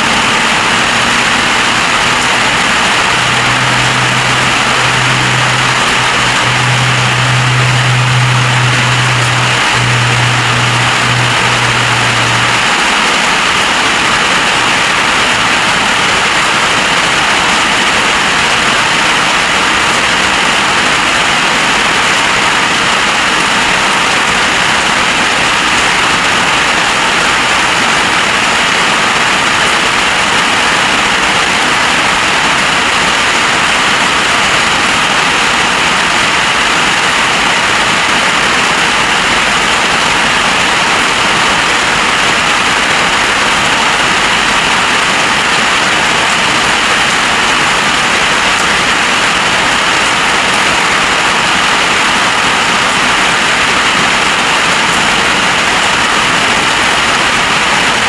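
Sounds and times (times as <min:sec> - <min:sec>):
low hum: 0:00.0 - 0:17.6
heavy rain pouring: 0:00.0 - 0:58.0.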